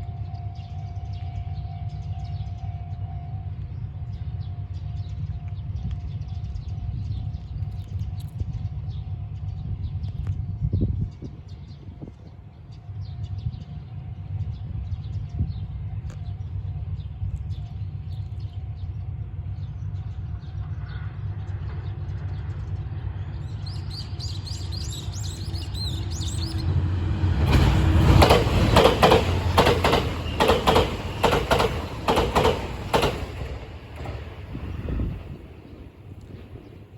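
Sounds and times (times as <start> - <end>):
train rumble: 0.0 - 36.9
wheels clattering over rail joints: 25.4 - 35.2.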